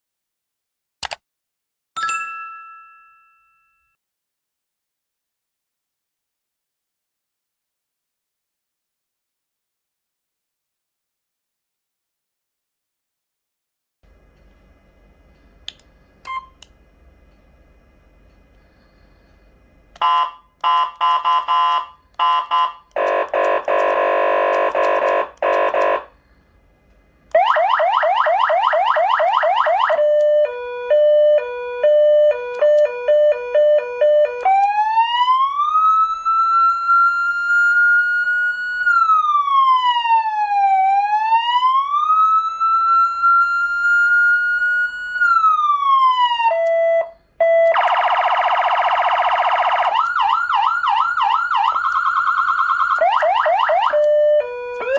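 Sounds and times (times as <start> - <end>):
siren wail: 20.0 - 26.1, 27.3 - 54.9
siren yelps: 20.0 - 26.1, 27.3 - 54.9
two-tone hi-lo siren: 20.0 - 26.1, 27.3 - 54.9
buzzy horn blast: 20.0 - 26.2.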